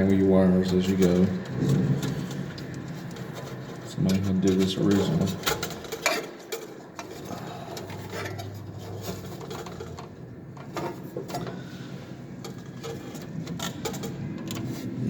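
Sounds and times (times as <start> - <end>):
hands working wires clicking: 0.0 - 15.0.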